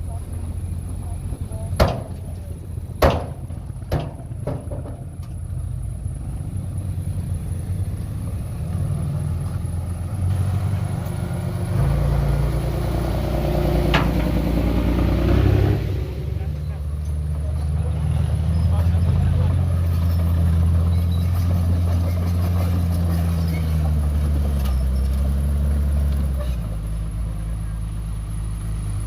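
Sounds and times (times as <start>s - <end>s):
diesel machine engine running: 0.0s - 29.0s
sharp knocks: 1.8s - 2.2s, 3.0s - 5.1s.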